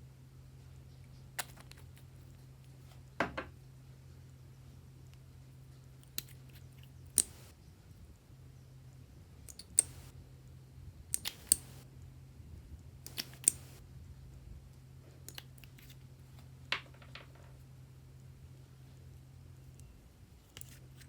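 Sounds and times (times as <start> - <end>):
slime popping and clicking: 11.1 - 11.8, 13.1 - 13.8.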